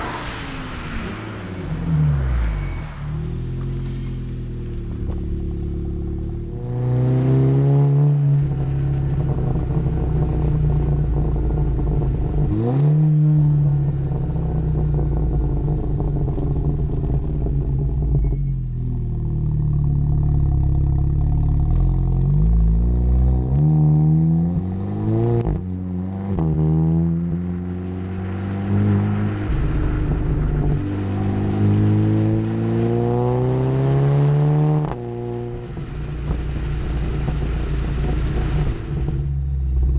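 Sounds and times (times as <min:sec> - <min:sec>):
car engine accelerating hard: 0:19.6 - 0:39.9.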